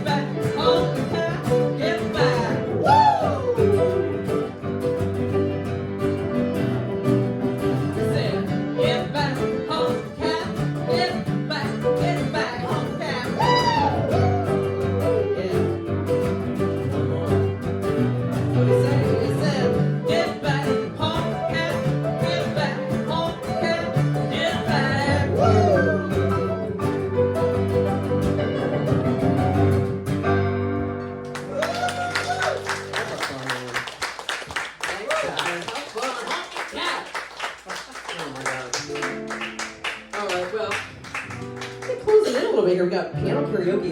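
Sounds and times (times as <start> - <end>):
live band playing rock song: 0.0 - 30.7
bending guitar notes: 0.0 - 33.0.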